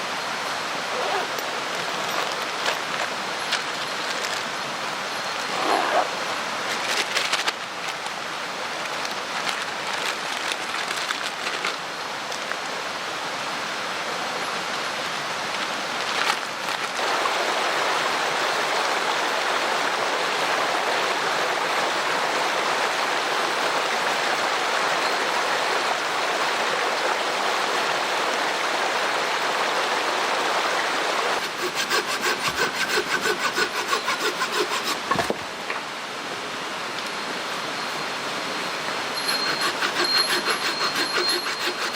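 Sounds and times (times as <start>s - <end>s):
mountain stream rushing: 0.0s - 41.9s
faint high squeal: 37.2s - 41.9s.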